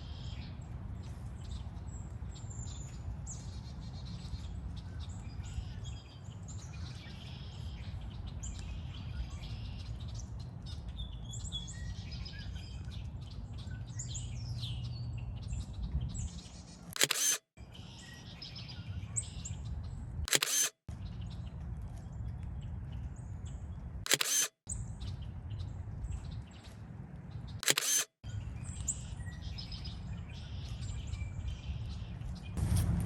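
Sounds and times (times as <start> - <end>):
small birds chirping: 0.0 - 32.6
camera shutter click: 17.0 - 17.4, 20.3 - 20.8, 24.1 - 24.6, 27.6 - 28.1.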